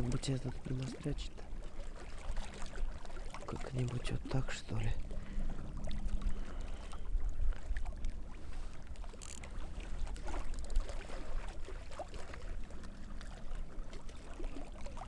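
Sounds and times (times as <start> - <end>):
fishing rod clicks and knocks: 9.1 - 9.5.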